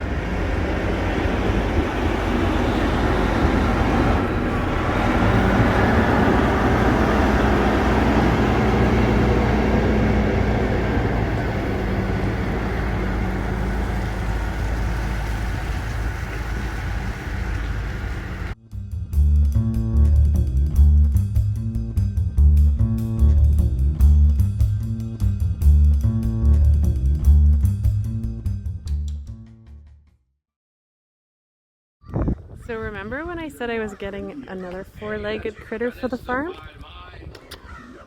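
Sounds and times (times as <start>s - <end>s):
continuous rumbling noise: 0.0s - 18.6s
vehicle engine hum: 0.0s - 18.6s.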